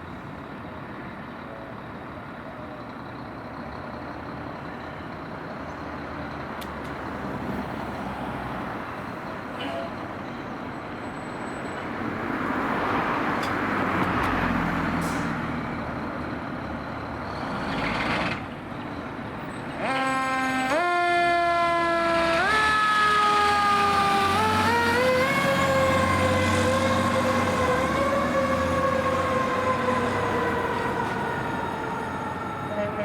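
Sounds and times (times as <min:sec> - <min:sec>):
vehicle noise: 0:00.0 - 0:33.0
fire engine siren wailing: 0:19.8 - 0:33.0.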